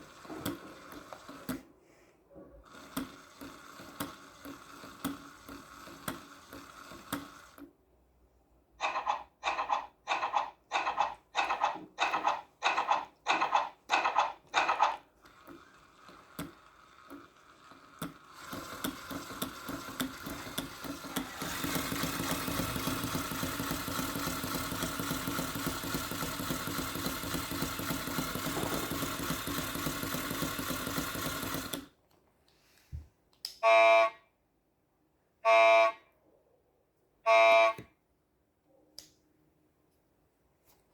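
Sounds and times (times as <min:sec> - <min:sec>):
motor whirring: 0:00.0 - 0:01.6, 0:12.0 - 0:31.9
small electric motor pulsing: 0:14.6 - 0:31.9.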